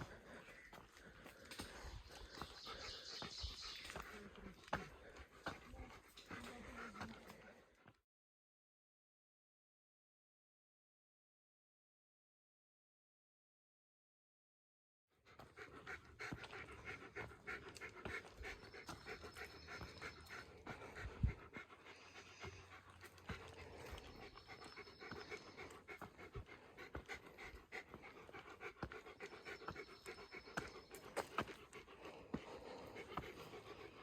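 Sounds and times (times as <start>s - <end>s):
person panting: 0.0s - 8.0s, 15.3s - 34.0s.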